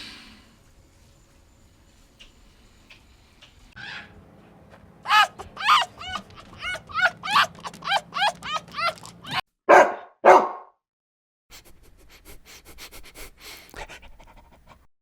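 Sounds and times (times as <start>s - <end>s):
animal yelping: 3.8s - 4.2s, 5.0s - 9.4s
harsh barking calls: 3.8s - 4.3s, 5.0s - 10.6s.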